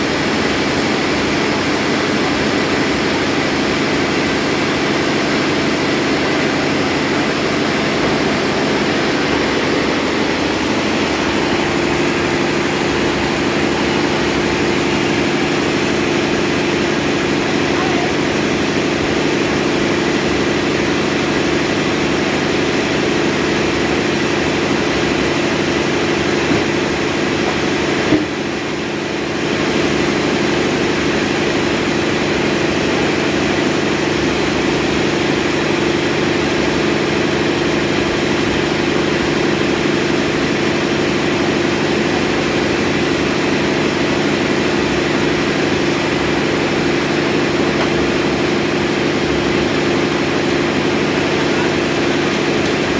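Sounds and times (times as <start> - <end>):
motor humming: 0.0 - 28.8.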